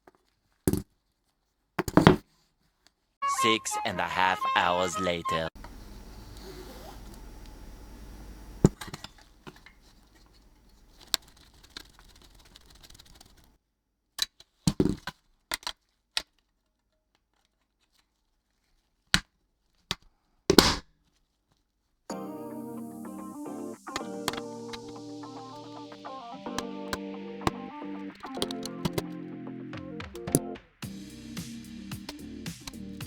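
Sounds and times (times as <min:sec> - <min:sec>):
faint background hum: 0:05.6 - 0:11.1.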